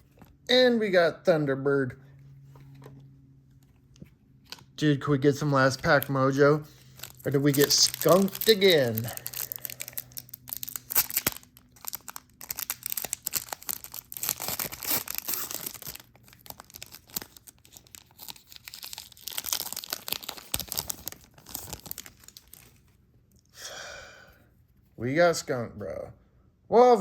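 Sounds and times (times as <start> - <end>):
wrapper tearing and crinkling: 5.8 - 22.9.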